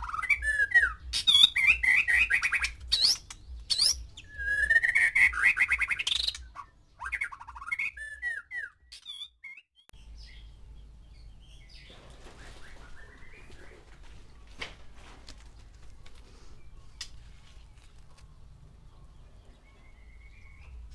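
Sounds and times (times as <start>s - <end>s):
bird singing whistled phrases: 0.0s - 10.5s, 19.7s - 20.7s
faint bird chirps: 16.3s - 20.9s.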